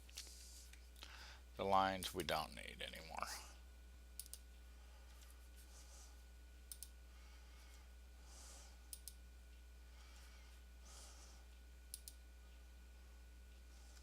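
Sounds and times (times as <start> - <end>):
faint steady hum: 0.0 - 14.0
computer mouse clicking: 4.2 - 4.4, 6.7 - 7.0, 8.9 - 9.2, 11.9 - 12.2.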